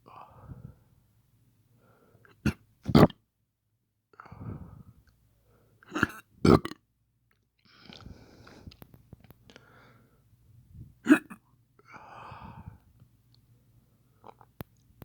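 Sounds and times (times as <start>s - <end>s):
throat sounds: 2.3s - 3.1s, 5.9s - 6.8s
person burping: 2.5s - 3.1s, 5.9s - 6.8s, 11.1s - 11.4s.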